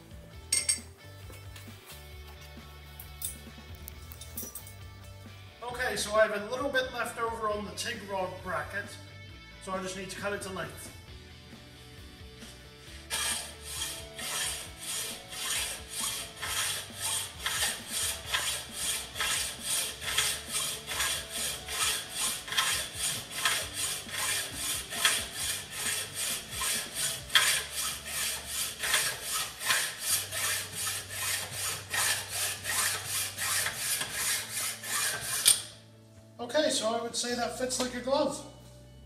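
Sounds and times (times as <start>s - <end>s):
hacksaw cutting metal: 13.0s - 35.8s.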